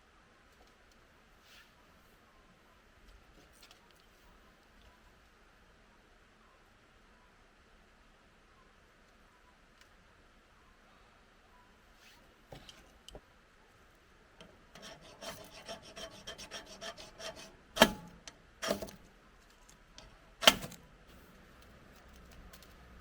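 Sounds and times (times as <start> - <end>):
fire-starter rod scraping: 14.4 - 20.9
loud striker strikes: 17.8 - 19.0.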